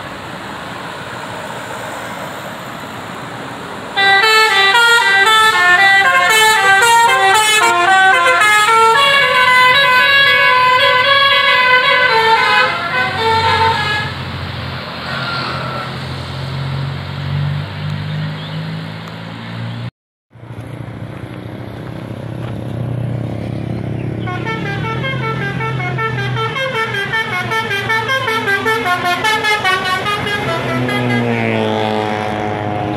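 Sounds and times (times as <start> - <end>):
bus engine running: 0.0 - 32.9
air horns playing melodies: 4.0 - 14.4, 24.2 - 32.9.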